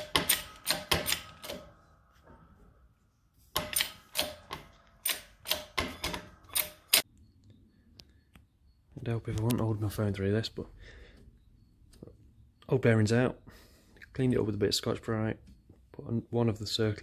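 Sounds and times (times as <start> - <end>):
sharp metallic clicks of press: 3.6 - 7.1.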